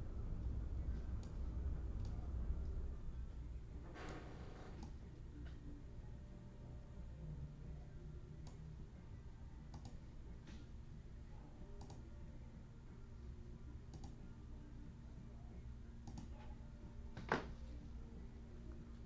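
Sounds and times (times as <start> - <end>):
low steady hum: 0.0 - 19.0
faint clicks: 9.7 - 10.6, 11.8 - 12.0, 13.9 - 14.2, 16.0 - 16.3.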